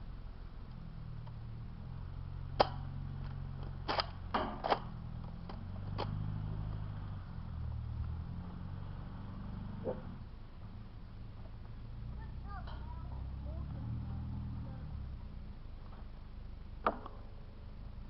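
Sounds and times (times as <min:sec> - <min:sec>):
steady low rumble: 0:00.0 - 0:18.0
toy blaster clicks and snaps: 0:03.2 - 0:04.9.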